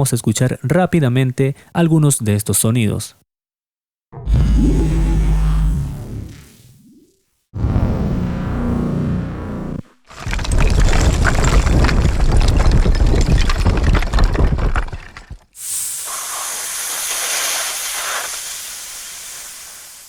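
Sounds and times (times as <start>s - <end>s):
high hiss: 15.6s - 20.0s.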